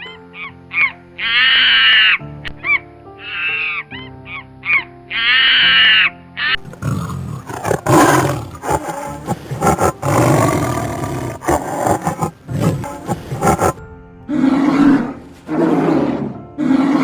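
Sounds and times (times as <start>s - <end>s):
harsh bird calls: 0.0s - 13.8s
background music: 0.0s - 17.0s
large animal roaring: 6.7s - 17.0s.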